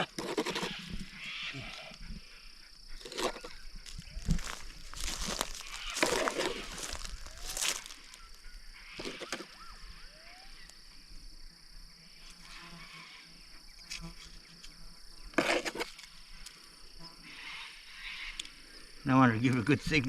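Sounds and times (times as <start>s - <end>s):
high insect drone: 0.0s - 20.0s
digging into hard clay: 3.0s - 3.5s, 4.4s - 8.0s, 15.4s - 15.9s.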